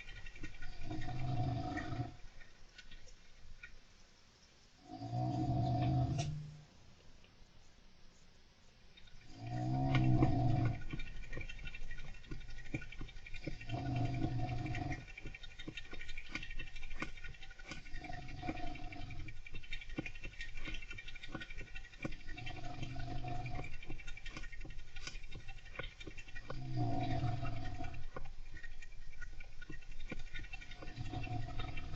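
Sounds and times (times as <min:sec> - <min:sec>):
hamster scratching and scrabbling: 0:09.0 - 0:31.9.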